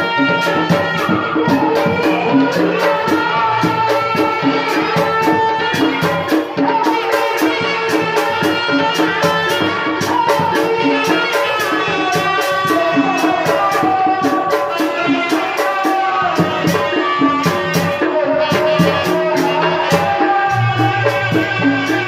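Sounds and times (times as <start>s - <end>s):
drums: 0.0s - 22.0s
sharp high percussion strokes: 0.0s - 22.0s
sustained melody: 19.6s - 22.0s.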